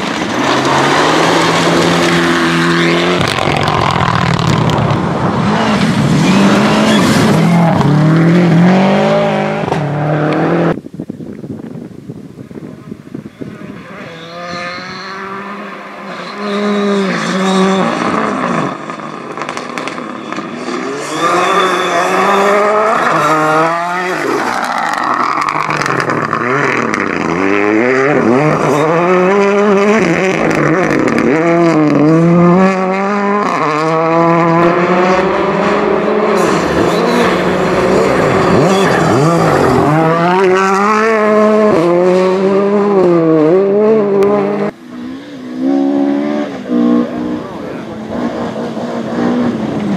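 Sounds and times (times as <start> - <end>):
rally car engine revving: 0.0 - 10.8, 13.6 - 49.9.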